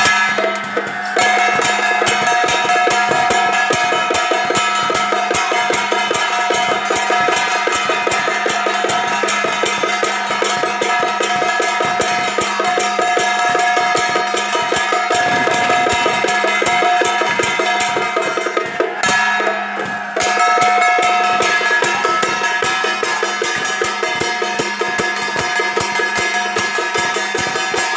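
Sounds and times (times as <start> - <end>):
fast drum and gong beat: 0.0 - 27.9.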